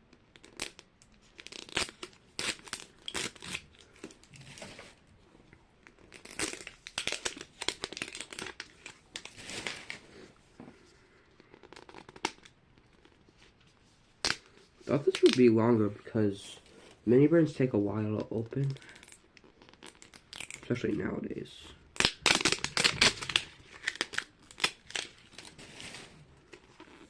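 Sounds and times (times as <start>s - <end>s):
plastic packaging crinkling and tearing: 0.3s - 5.0s, 5.9s - 10.2s, 14.2s - 15.6s, 18.3s - 20.9s, 21.9s - 27.0s.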